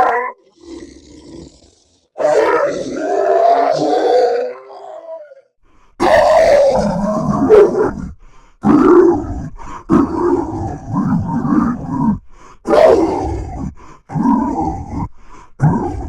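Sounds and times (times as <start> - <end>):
monster guttural roars: 0.0 - 16.0.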